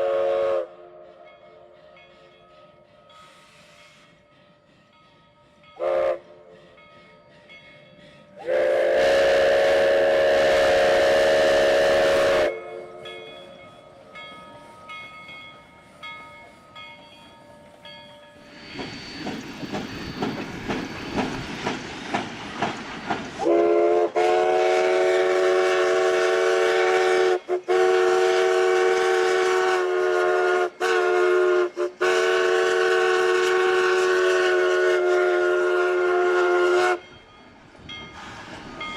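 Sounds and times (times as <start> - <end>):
steam locomotive whistle: 0.0 - 4.5, 5.8 - 6.8, 8.3 - 13.5, 23.4 - 37.2
steam locomotive exhaust chuffs: 0.0 - 38.9.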